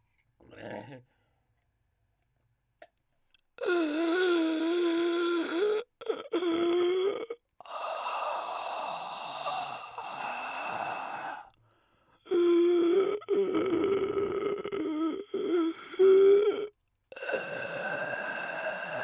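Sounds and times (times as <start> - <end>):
person mimicking snoring: 3.6 - 11.5, 12.3 - 19.0
breathy exhale: 7.7 - 12.1, 17.2 - 19.0
person groaning: 12.6 - 19.0.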